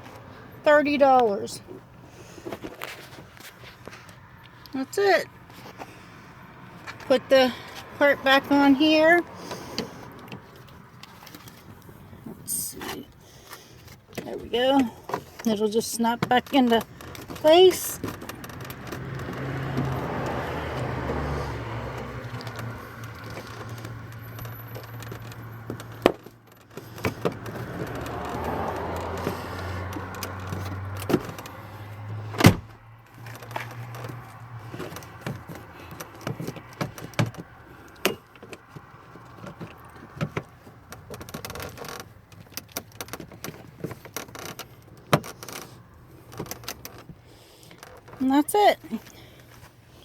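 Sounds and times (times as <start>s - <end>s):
plastic car trim clicking and rattling: 13.5s - 21.2s, 21.8s - 48.2s.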